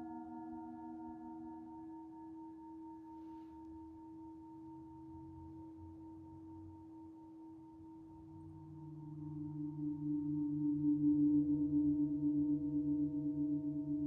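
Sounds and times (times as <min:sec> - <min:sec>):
singing bowl ringing: 0:00.0 - 0:05.2, 0:08.2 - 0:14.0.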